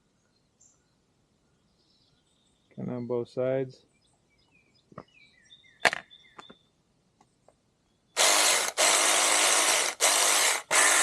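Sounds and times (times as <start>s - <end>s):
mini chainsaw running: 8.2s - 11.0s.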